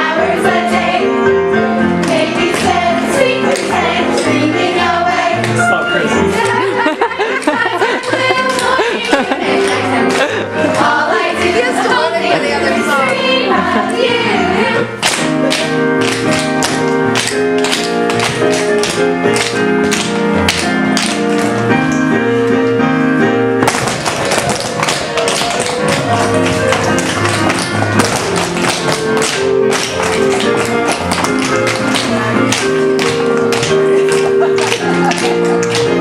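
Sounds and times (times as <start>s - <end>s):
music: 0.0s - 36.0s
tap shoes striking: 23.6s - 35.9s.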